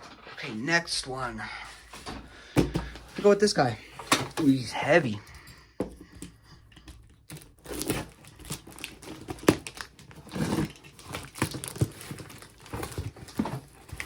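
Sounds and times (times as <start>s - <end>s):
cardboard crinkling and rustling: 6.8s - 14.0s
packing tape tearing: 7.3s - 14.0s.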